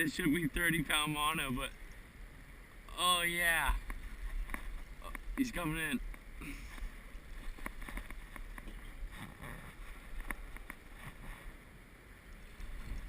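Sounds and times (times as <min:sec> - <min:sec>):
wind rumble on microphone: 0:03.6 - 0:13.0.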